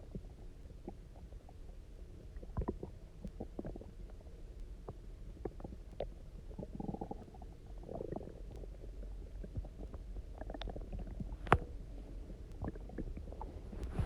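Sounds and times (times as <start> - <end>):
stomach gurgling and rumbling: 0.0 - 14.0
stomach popping: 2.4 - 4.0, 4.8 - 14.0.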